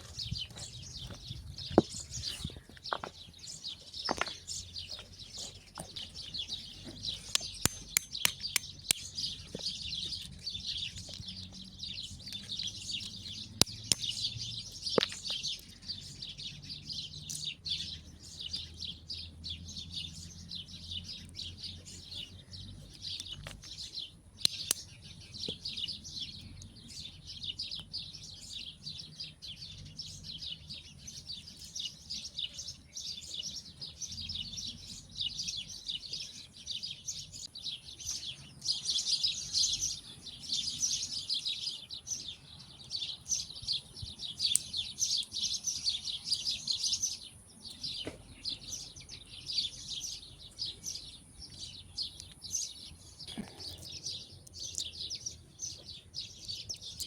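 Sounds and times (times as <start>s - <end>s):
small birds chirping: 0.0s - 57.0s
sharp clicks: 7.2s - 9.3s.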